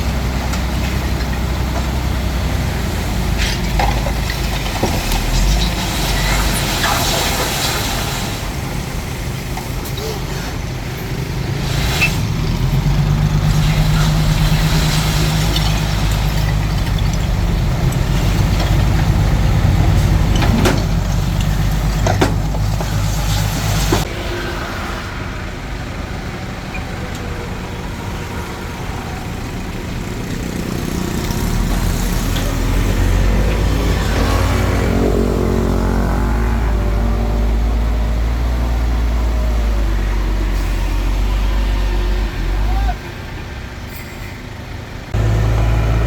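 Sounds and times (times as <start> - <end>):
bulldozer diesel engine running: 0.0 - 46.0
sharp knocks: 19.8 - 23.1.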